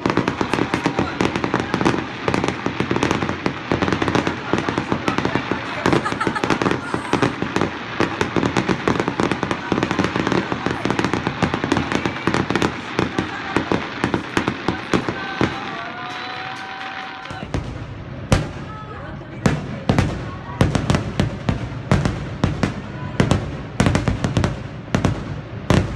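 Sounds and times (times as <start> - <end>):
fireworks bangs and crackles: 0.0 - 25.9.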